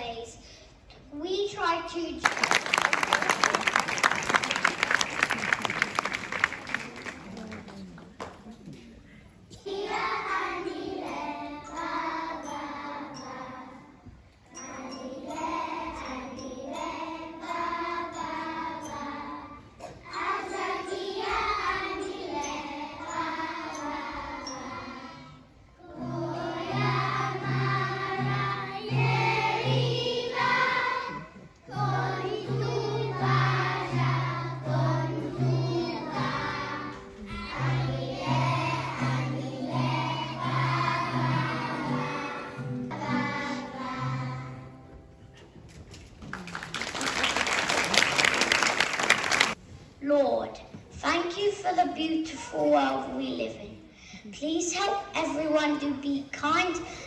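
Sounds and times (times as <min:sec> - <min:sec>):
children singing in a choir: 0:09.5 - 0:45.4.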